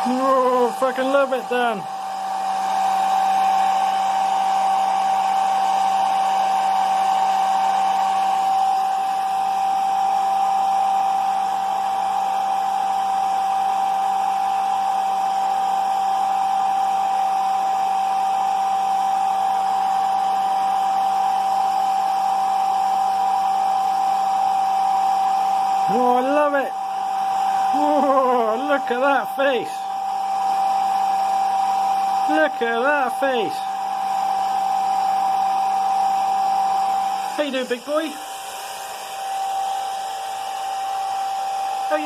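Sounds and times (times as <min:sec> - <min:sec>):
small electric motor whining: 0:00.0 - 0:42.0.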